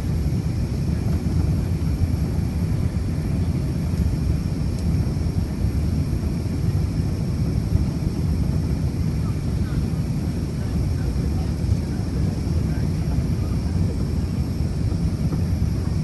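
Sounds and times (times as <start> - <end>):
airliner cabin engine rumble: 0.0 - 16.0.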